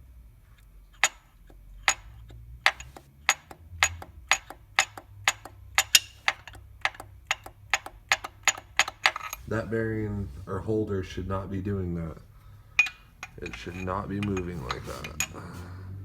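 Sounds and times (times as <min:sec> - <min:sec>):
metal clacking clicks: 0:01.0 - 0:09.5, 0:12.8 - 0:15.6.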